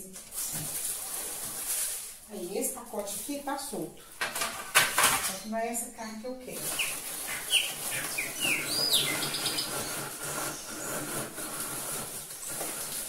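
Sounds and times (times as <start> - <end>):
bird chirping: 6.5 - 11.3.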